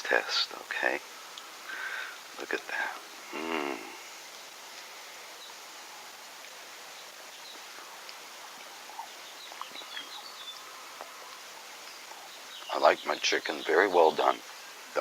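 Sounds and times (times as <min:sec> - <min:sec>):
outdoor background noise: 0:00.0 - 0:15.0
faint high bird chirps: 0:08.9 - 0:14.4.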